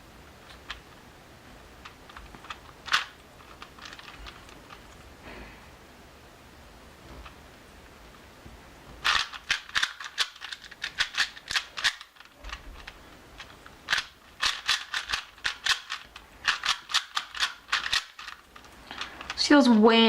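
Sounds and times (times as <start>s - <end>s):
plastic puzzle cube clicking: 0.4s - 1.0s, 1.8s - 5.0s, 9.0s - 19.4s.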